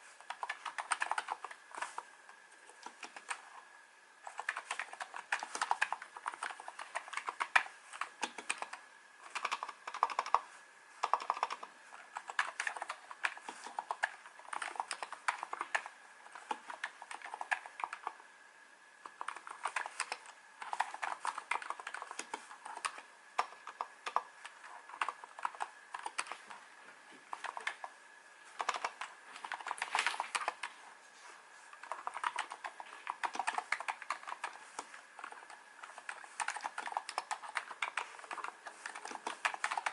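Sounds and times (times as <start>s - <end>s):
keyboard keystroke clicks: 4.3s - 10.4s.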